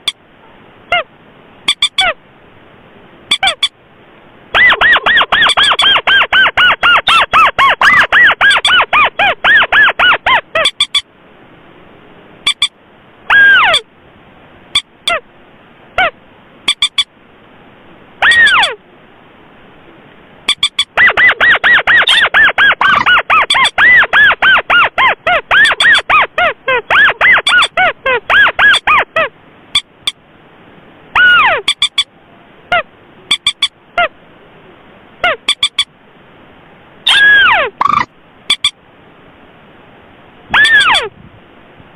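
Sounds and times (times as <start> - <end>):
bird call sliding down in pitch: 1.7 - 2.2, 3.3 - 3.8, 4.5 - 11.0, 12.5 - 12.7, 13.3 - 13.9, 16.0 - 17.1, 18.2 - 18.8, 20.5 - 30.2, 31.1 - 32.1, 32.7 - 34.2, 35.2 - 35.9, 37.0 - 38.8, 40.5 - 41.1
bird calls in rapid short notes: 1.7 - 2.2, 3.3 - 3.8, 4.6 - 11.0, 12.5 - 12.7, 13.3 - 13.8, 16.7 - 17.1, 18.2 - 18.8, 20.5 - 29.1, 31.2 - 32.1, 32.7 - 34.1, 35.2 - 35.9, 37.0 - 38.8, 40.5 - 41.1.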